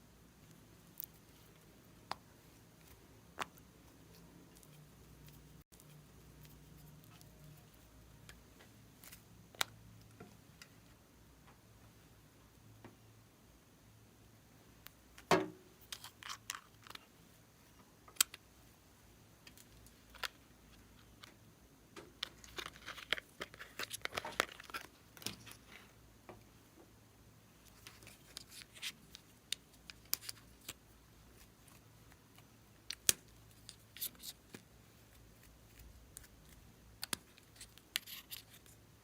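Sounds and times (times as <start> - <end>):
plastic crinkling: 22.2 - 25.7.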